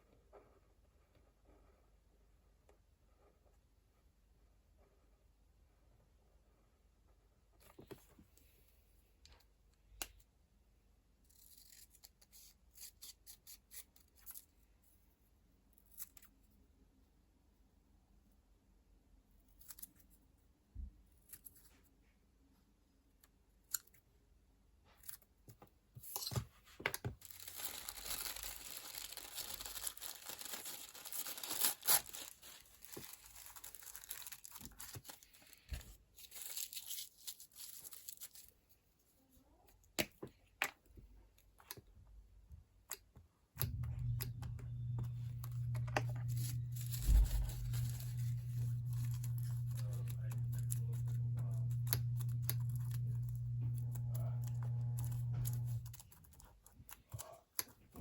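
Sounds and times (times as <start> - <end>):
paper tearing and crinkling: 27.2 - 38.5, 43.7 - 57.2
low hum: 43.6 - 56.2.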